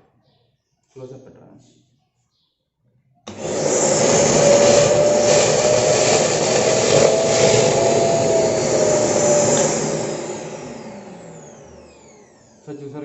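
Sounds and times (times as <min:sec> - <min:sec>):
wet vacuum cleaner sucking water: 0:03.3 - 0:12.2.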